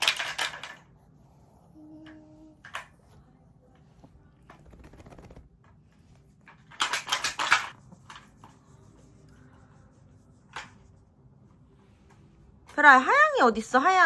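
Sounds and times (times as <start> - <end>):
rapid taps: 4.6 - 5.5.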